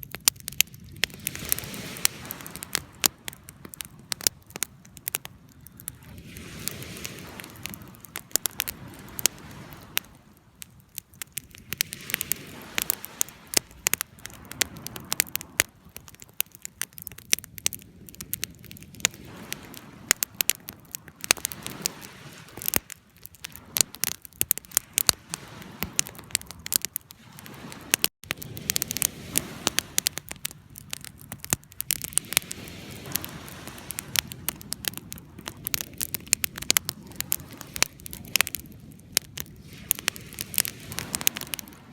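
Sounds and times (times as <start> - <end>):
fire crackling and popping: 0.0 - 41.9
low rush of burning: 0.5 - 41.9.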